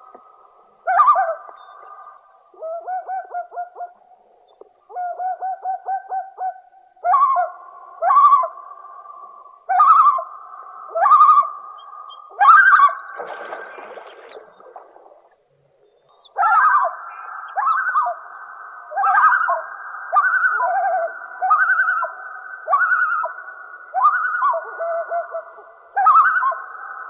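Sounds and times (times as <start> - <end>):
loon calling: 0.8 - 4.0, 9.7 - 15.2, 16.1 - 27.0.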